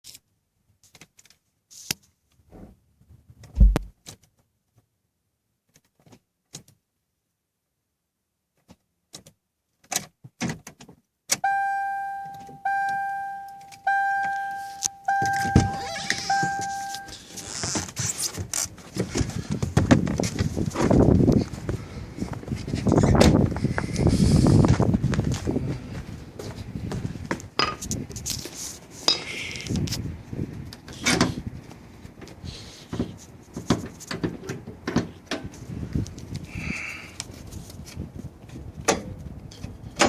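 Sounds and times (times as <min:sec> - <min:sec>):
heavy thump: 0:03.5 - 0:03.9
car warning chime dinging: 0:11.4 - 0:17.3.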